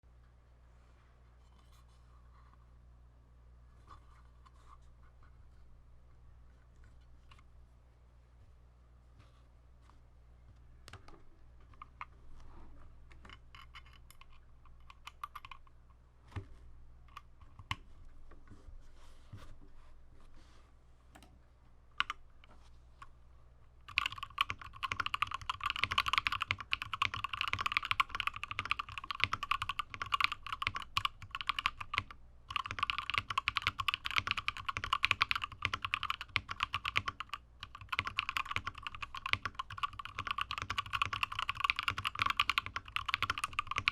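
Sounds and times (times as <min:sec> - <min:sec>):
mechanical keyboard typing: 0:13.3 - 0:15.7, 0:23.8 - 0:43.9.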